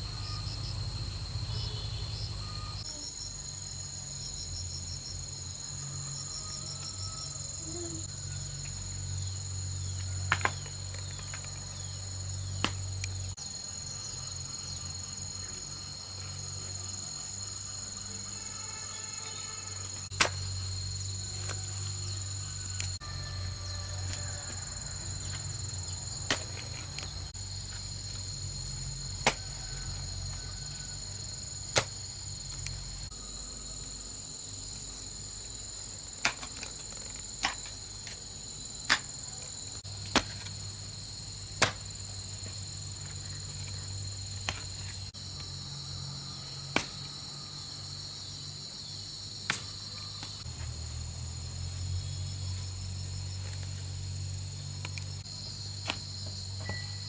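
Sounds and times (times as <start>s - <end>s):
insects trilling: 0.0s - 57.0s
sharp knocks or chops: 31.8s - 32.0s, 41.6s - 41.9s.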